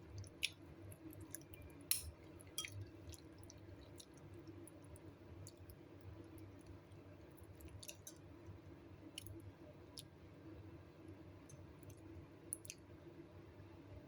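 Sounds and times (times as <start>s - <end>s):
low room hum: 0.0s - 14.0s.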